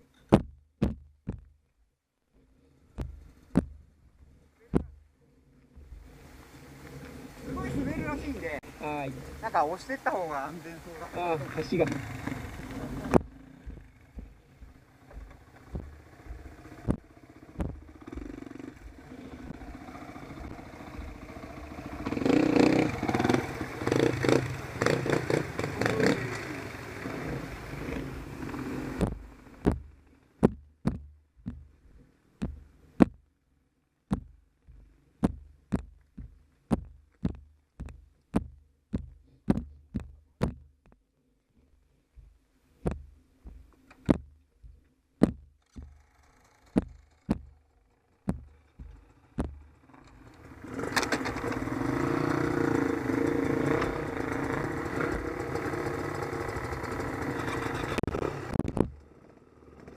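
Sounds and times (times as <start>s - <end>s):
dull thumps: 0.2s - 1.7s, 2.9s - 5.1s, 11.8s - 22.2s, 28.9s - 33.3s, 34.0s - 41.0s, 42.1s - 46.0s, 46.7s - 49.8s, 58.0s - 59.0s
motorcycle engines with clatter: 2.4s - 33.3s, 34.1s - 41.1s, 42.1s - 59.9s.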